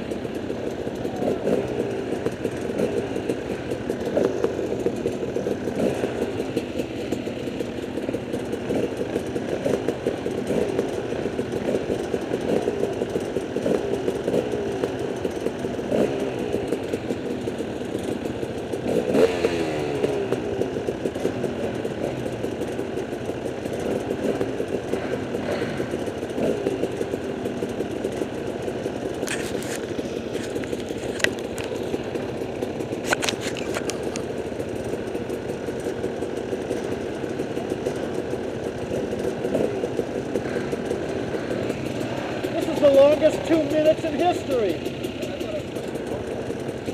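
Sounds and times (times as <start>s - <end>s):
dirt bike engines revving: 0.0s - 46.9s.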